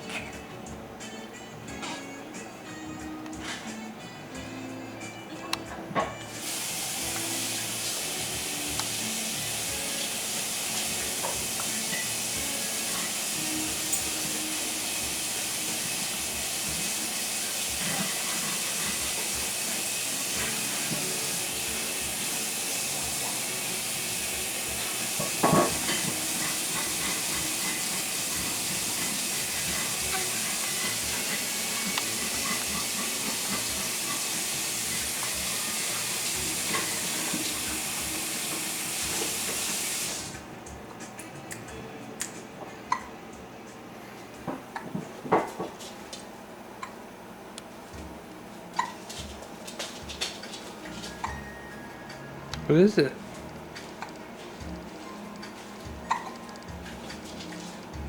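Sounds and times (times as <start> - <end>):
steady hiss: 6.3 - 40.5.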